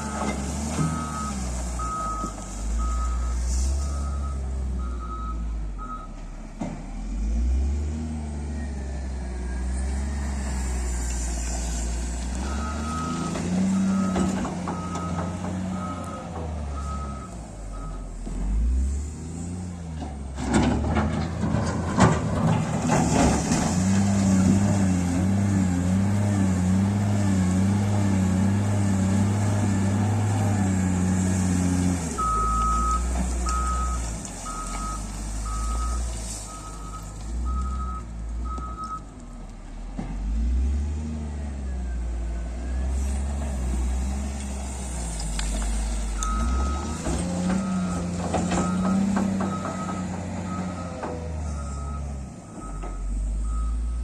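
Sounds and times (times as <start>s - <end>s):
diesel engine running: 0.0s - 54.0s
reversing alarm beeping: 12.4s - 18.2s, 32.2s - 39.1s, 46.2s - 54.0s.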